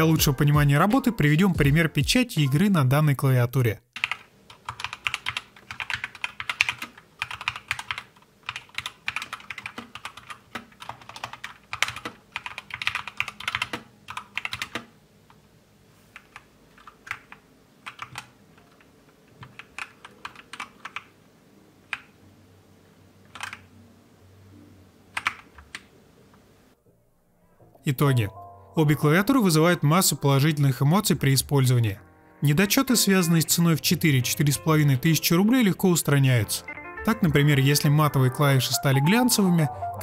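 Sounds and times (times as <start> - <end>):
mechanical keyboard typing: 4.0 - 14.9, 16.1 - 21.1, 23.3 - 23.7, 25.1 - 25.9.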